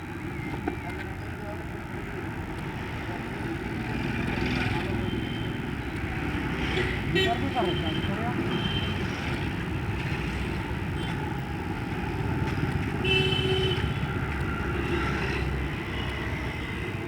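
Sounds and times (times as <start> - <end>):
motorbike road rumble: 0.0 - 17.0.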